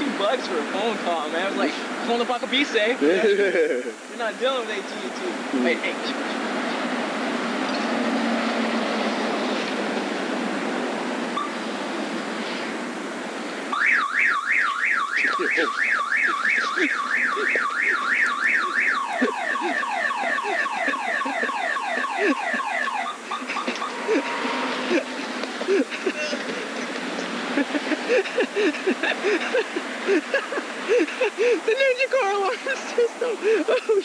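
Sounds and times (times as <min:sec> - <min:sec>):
steady rushing noise: 0:00.0 - 0:13.8, 0:19.0 - 0:33.6
car alarm siren: 0:13.7 - 0:25.3.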